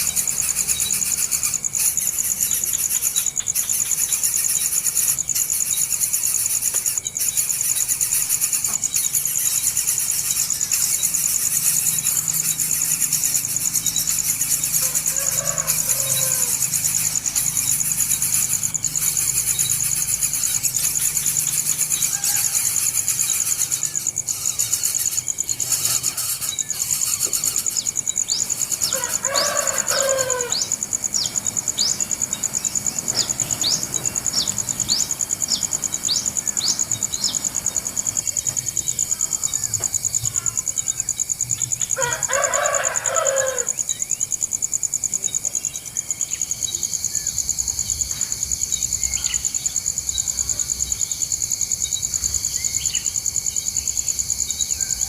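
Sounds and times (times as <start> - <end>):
drawn-out bird calls: 0.0 - 40.8
high-pitched insect drone: 0.0 - 55.0.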